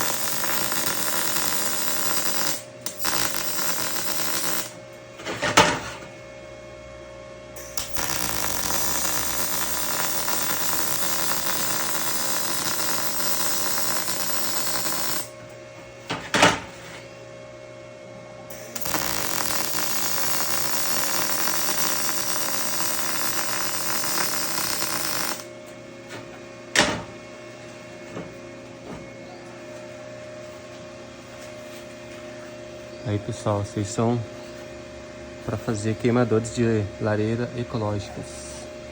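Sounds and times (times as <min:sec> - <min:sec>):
welding arc crackling: 0:00.0 - 0:04.8, 0:07.6 - 0:15.4, 0:18.5 - 0:25.5
steady hum: 0:00.0 - 0:38.9.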